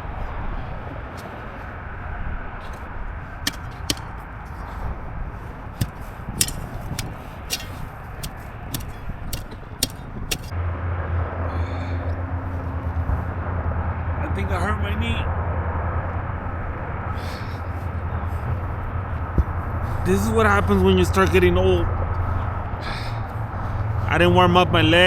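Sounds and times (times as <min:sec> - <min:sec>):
outdoor background noise: 0:00.0 - 0:25.0
digging tool scraping dirt and stones: 0:02.6 - 0:10.5.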